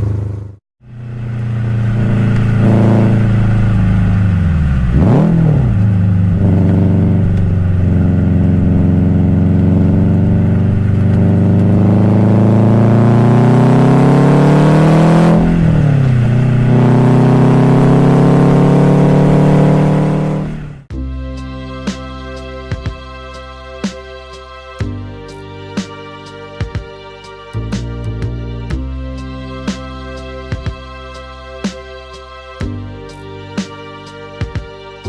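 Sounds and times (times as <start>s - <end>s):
car engine accelerating: 0.0s - 20.9s.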